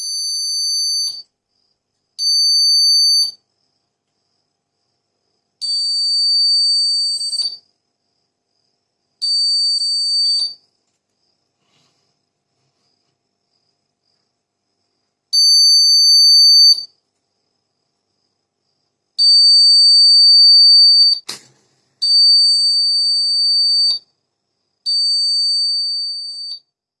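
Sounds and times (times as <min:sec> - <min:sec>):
fire alarm buzzer high steady tone: 0:00.0 - 0:01.3, 0:02.2 - 0:03.4, 0:05.6 - 0:07.6, 0:09.2 - 0:10.6, 0:15.3 - 0:16.9, 0:19.2 - 0:21.3, 0:22.0 - 0:24.1, 0:24.9 - 0:26.8
sharp click: 0:21.2 - 0:21.6.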